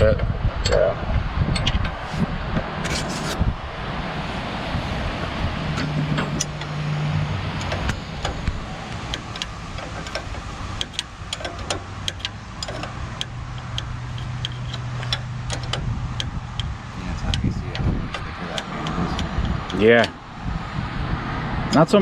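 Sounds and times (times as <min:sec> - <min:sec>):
low steady hum: 0:00.0 - 0:22.0
metallic clicks of hand tools: 0:07.6 - 0:20.2.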